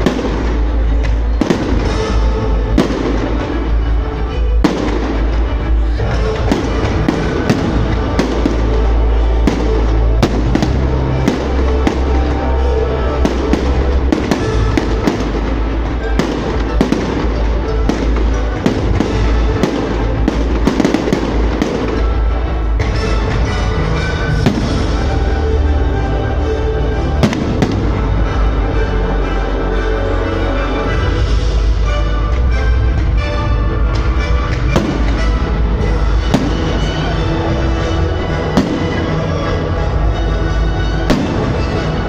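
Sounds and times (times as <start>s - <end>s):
fireworks bangs and crackles: 0.0s - 42.0s
loud music soundtrack: 0.0s - 42.0s.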